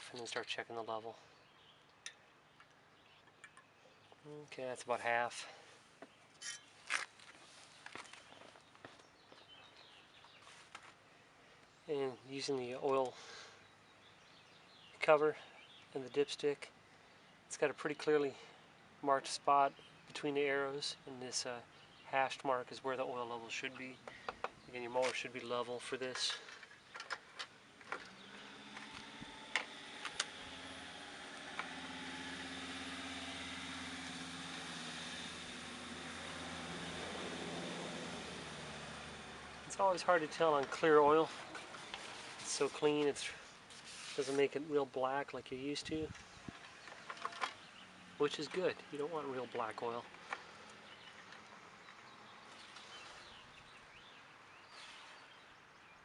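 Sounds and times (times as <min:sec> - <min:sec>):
engine humming: 0:23.4 - 0:44.4.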